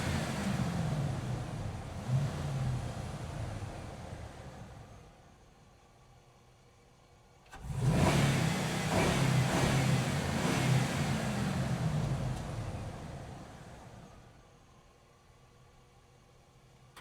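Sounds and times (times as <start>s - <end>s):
truck engine revving: 7.6s - 12.0s.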